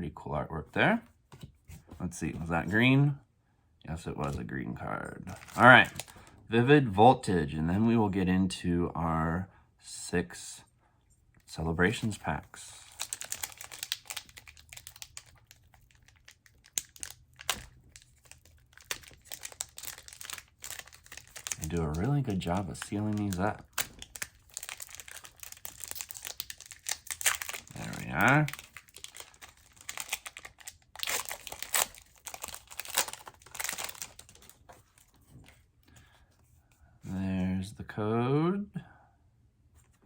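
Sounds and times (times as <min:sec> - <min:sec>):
foil wrapper crinkling: 0:12.8 - 0:35.2.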